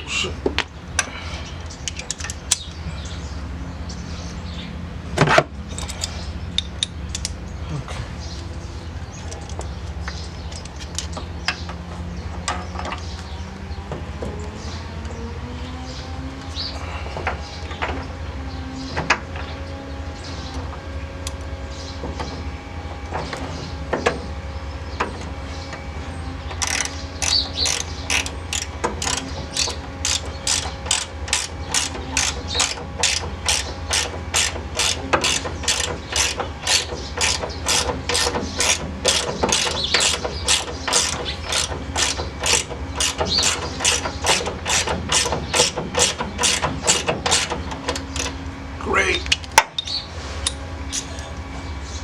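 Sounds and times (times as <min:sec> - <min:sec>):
ratchet wrench clicking: 0:26.6 - 0:48.3.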